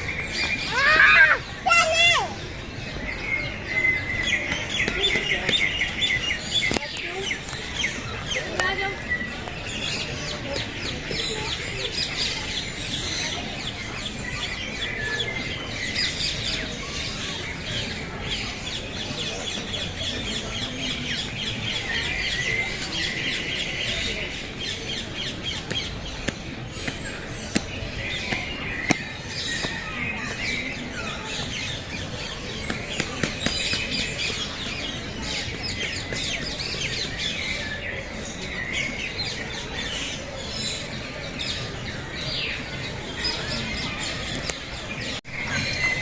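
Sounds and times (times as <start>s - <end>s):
birds chirping and squawking: 0.0s - 46.0s.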